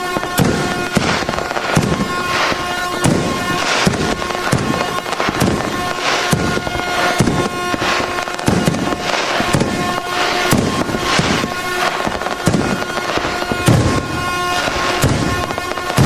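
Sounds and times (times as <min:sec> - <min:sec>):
air horn tone: 0:00.0 - 0:16.0
fireworks bangs and crackle: 0:00.0 - 0:16.0.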